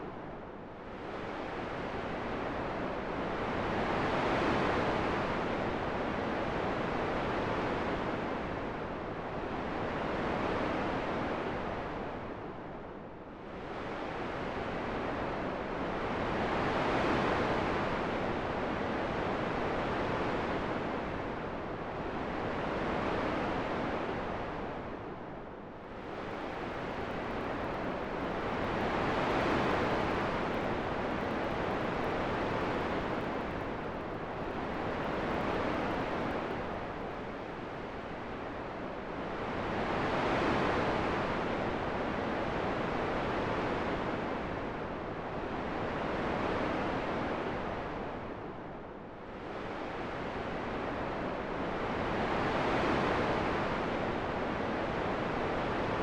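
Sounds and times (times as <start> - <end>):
wind blowing in gusts: 25.8 - 41.2.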